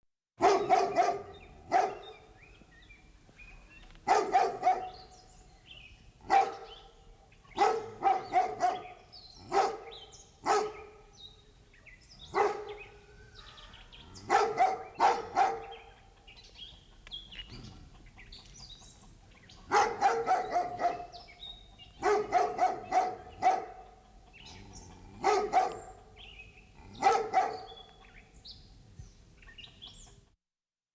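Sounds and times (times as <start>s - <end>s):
large dog barking: 0.4s - 2.3s, 4.0s - 5.2s, 6.2s - 11.2s, 12.2s - 13.5s, 14.1s - 16.1s, 19.6s - 27.9s.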